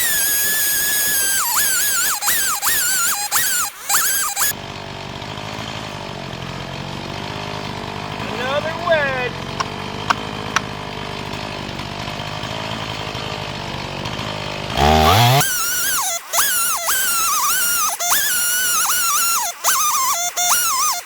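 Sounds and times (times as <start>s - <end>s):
high wavering squeal: 0.0s - 4.5s, 15.4s - 21.0s
chainsaw running and revving: 0.0s - 21.0s.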